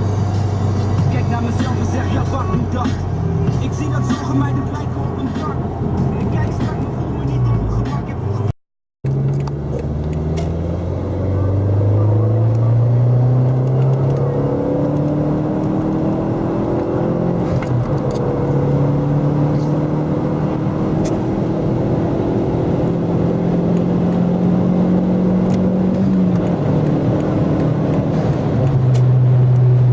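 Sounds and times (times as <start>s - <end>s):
car engine accelerating: 0.0s - 29.9s.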